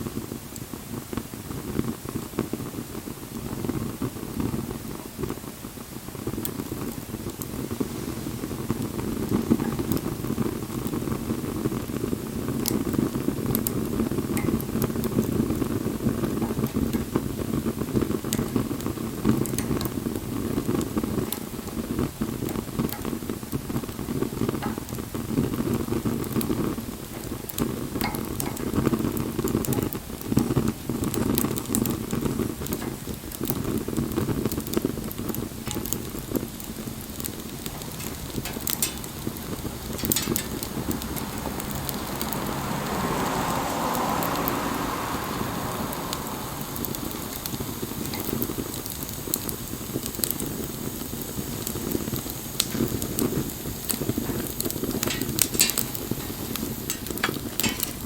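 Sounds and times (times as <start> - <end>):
bonfire flames rumbling: 0.0 - 58.0
fire crackles and pops: 0.0 - 58.0.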